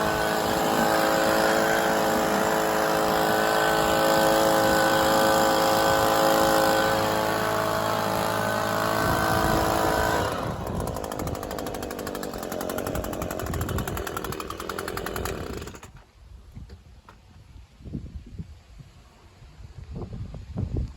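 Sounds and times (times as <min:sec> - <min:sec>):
lawn mower engine running: 0:00.0 - 0:16.1.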